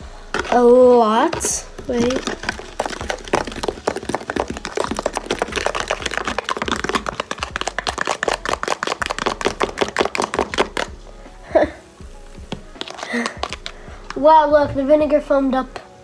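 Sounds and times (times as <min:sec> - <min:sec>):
foam bubbles fizzing and popping: 0:00.0 - 0:15.8.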